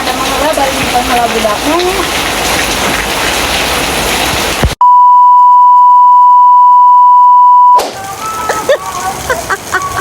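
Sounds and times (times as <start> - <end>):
loud steady bleep: 4.8 - 7.8
rain-like hiss: 7.8 - 10.0.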